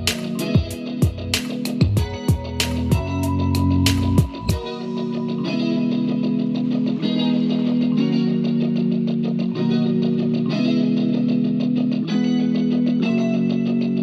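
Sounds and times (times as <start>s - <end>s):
fast ticking beat: 0.0s - 4.7s
guitar-led instrumental music: 0.0s - 14.0s.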